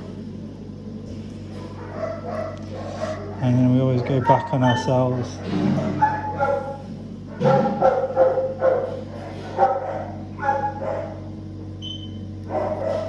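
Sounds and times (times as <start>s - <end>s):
steady low hum: 0.0s - 13.0s
dogs barking and yipping: 1.5s - 11.3s, 12.4s - 13.0s.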